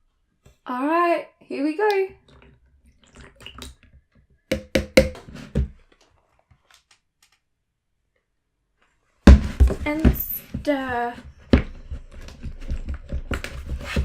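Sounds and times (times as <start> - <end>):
sharp taps and knocks: 4.5 - 5.7.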